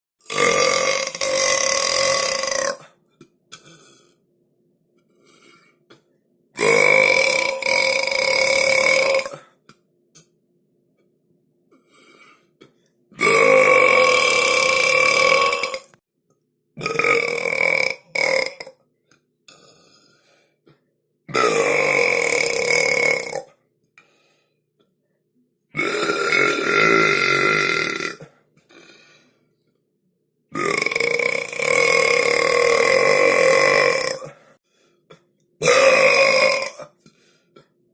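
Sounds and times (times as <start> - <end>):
person belching loudly: 0.2 - 3.0, 6.6 - 9.5, 13.2 - 16.0, 16.8 - 18.8, 21.3 - 23.5, 25.7 - 28.9, 30.5 - 34.5, 35.6 - 37.0.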